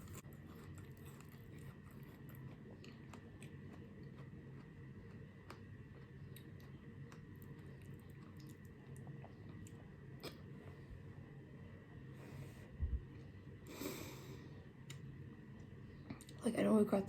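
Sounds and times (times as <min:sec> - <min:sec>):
close-up chewing: 0:00.0 - 0:10.4
low room hum: 0:00.0 - 0:17.0.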